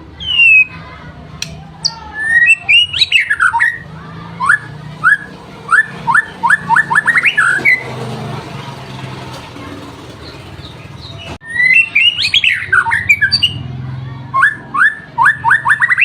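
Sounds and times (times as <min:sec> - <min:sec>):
songbird singing: 0:00.0 - 0:00.8, 0:01.4 - 0:07.9, 0:10.2 - 0:13.6.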